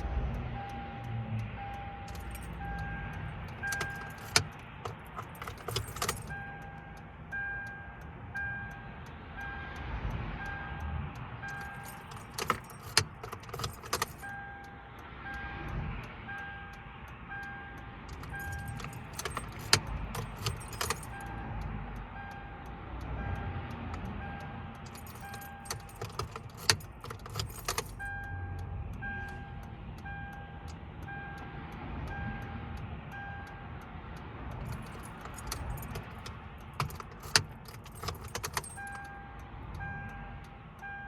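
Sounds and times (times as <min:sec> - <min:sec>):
low traffic rumble: 0:00.0 - 0:41.0
car warning chime beeping: 0:00.3 - 0:33.9, 0:34.5 - 0:41.0
key clicking in ignition: 0:01.7 - 0:07.8, 0:11.4 - 0:15.4, 0:17.4 - 0:31.2, 0:34.5 - 0:40.2
keys jangling: 0:02.1 - 0:06.4, 0:11.5 - 0:14.4, 0:18.1 - 0:21.4, 0:24.8 - 0:28.1, 0:34.6 - 0:39.1.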